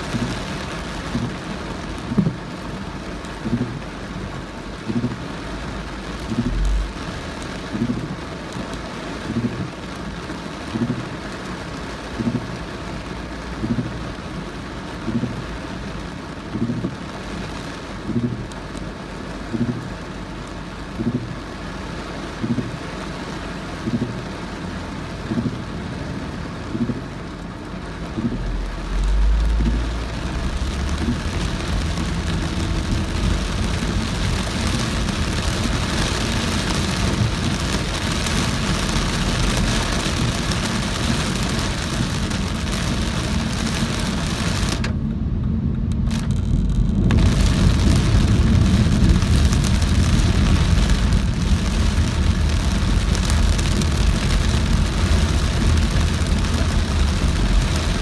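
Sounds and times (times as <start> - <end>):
heavy rain drumming on car: 0.0 - 58.0
windscreen wipers thumping: 0.0 - 58.0
deep rumble: 4.8 - 8.5, 26.6 - 58.0.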